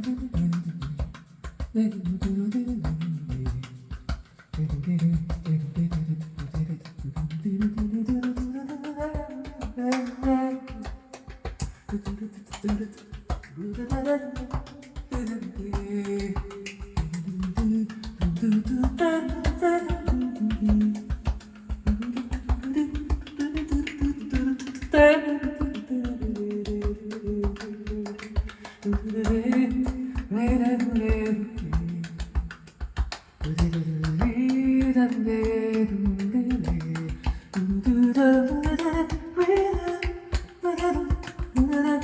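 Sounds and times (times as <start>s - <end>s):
person singing a melody: 0.0s - 32.8s, 33.4s - 42.0s
clicking percussive beat: 0.0s - 42.0s.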